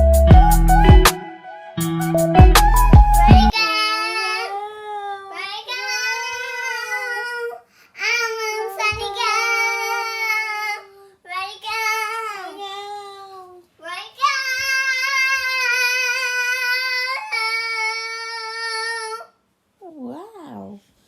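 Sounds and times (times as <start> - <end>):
child singing high notes: 3.2 - 19.3.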